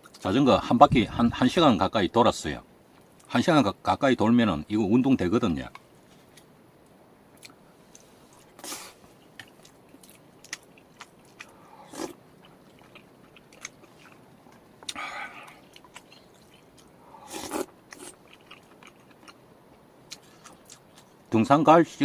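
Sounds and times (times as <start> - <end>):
person chewing crunchy food: 7.4 - 19.4, 20.1 - 21.2.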